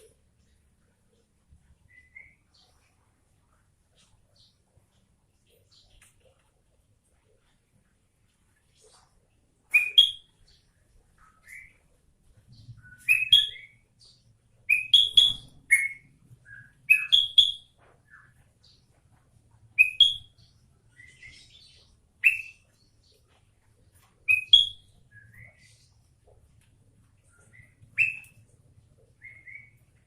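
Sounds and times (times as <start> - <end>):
bulbul singing: 12.6 - 18.8, 19.8 - 23.2, 24.2 - 26.0, 27.3 - 30.0.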